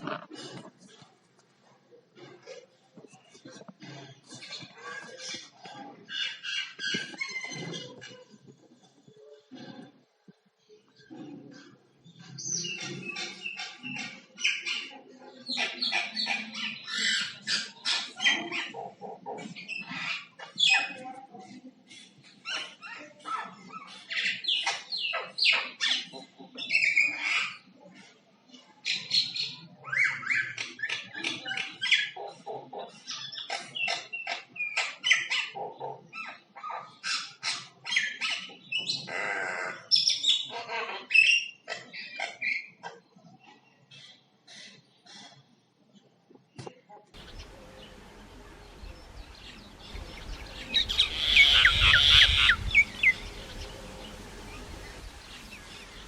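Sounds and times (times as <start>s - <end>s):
myna whistling and chattering: 49.5s - 56.0s.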